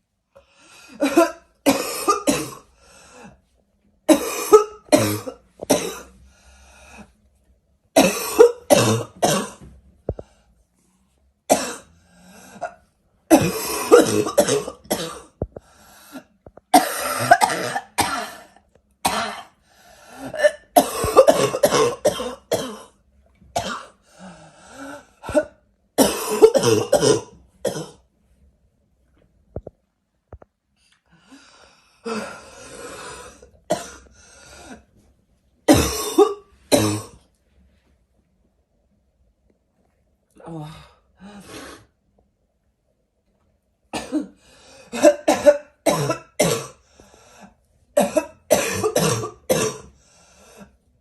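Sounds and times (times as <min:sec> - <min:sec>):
person barking cough: 0:16.8 - 0:18.5, 0:20.4 - 0:22.9, 0:44.9 - 0:46.8, 0:48.0 - 0:49.9.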